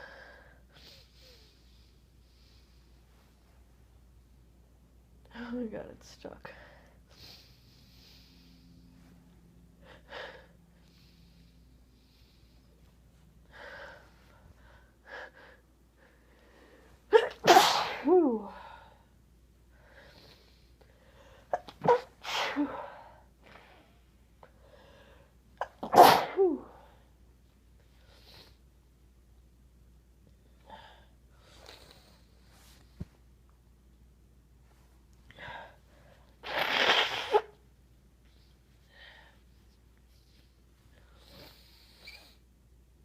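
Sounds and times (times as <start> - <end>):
soft breaths: 0.0 - 4.1, 6.4 - 17.1, 18.4 - 21.8, 22.5 - 25.6, 30.3 - 33.5, 34.5 - 36.4, 38.1 - 42.6
person sneezing: 17.1 - 18.6, 21.5 - 23.1, 25.6 - 26.9, 36.4 - 37.6.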